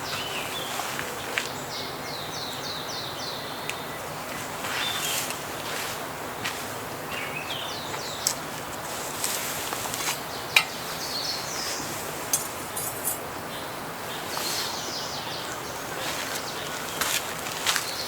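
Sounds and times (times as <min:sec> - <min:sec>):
birds chirping: 0:00.0 - 0:18.0
outdoor background noise: 0:00.0 - 0:18.0
camping gear clicking and rattling: 0:11.6 - 0:13.3.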